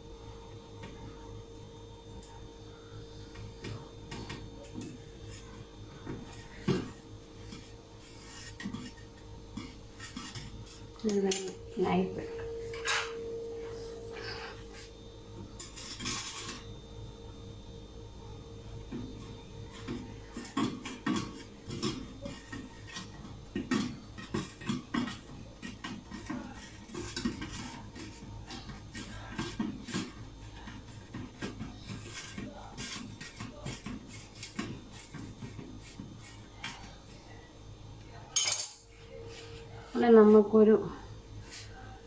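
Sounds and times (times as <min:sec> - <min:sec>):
knife scraping on dishware: 0:04.2 - 0:11.5, 0:12.6 - 0:13.3, 0:15.6 - 0:16.7, 0:19.6 - 0:37.0, 0:38.4 - 0:39.8.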